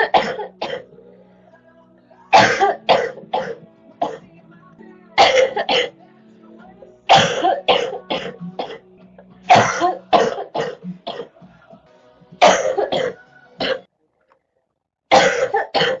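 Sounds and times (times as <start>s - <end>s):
girl coughing: 0.0s - 0.8s, 2.4s - 4.2s, 5.2s - 5.9s, 7.1s - 8.8s, 9.5s - 11.3s, 12.4s - 13.8s, 15.1s - 16.0s.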